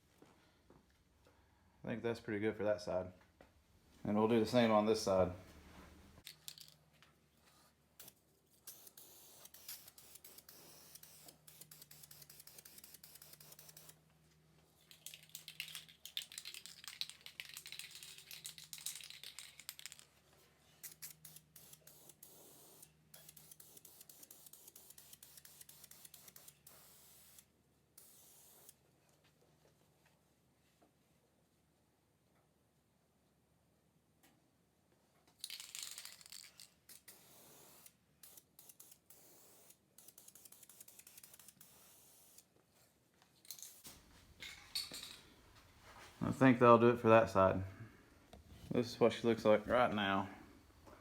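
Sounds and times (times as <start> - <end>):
aerosol spray hissing: 21.3 - 22.8.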